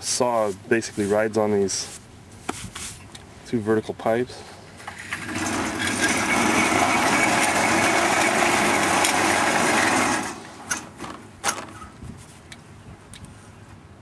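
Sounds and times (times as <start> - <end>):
small motor running: 5.1 - 10.4.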